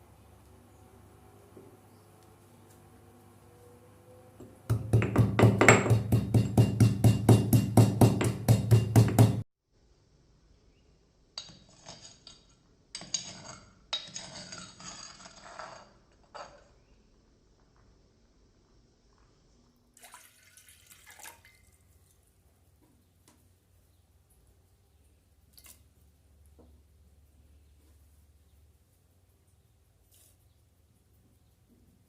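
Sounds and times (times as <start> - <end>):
rapid even pounding: 4.7 - 9.4.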